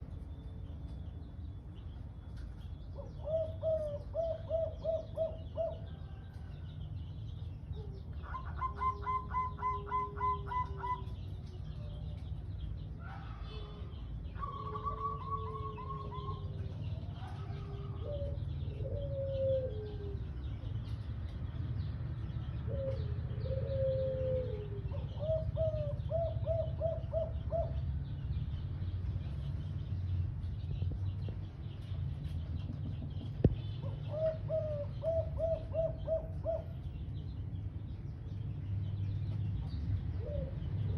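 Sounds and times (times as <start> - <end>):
low background hum: 0.0 - 40.9
dove cooing: 3.1 - 6.1, 7.8 - 11.2, 14.4 - 20.3, 22.7 - 27.9, 33.8 - 36.9.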